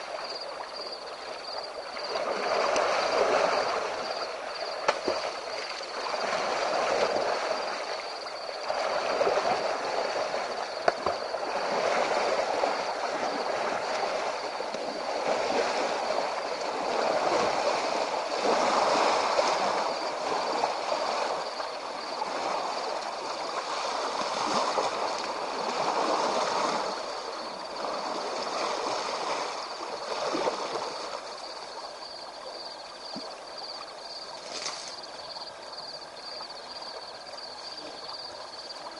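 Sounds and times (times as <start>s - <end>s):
water sloshing and splashing: 0.0s - 38.9s.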